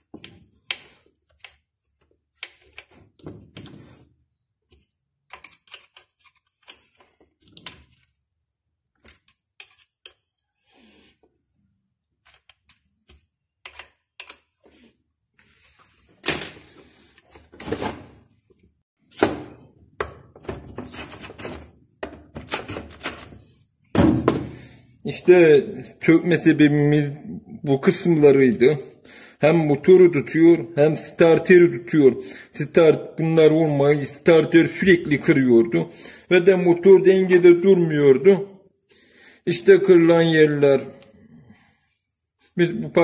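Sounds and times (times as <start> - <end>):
hand tools and parts clicking: 4.7 - 8.1, 8.9 - 10.4, 12.2 - 14.6.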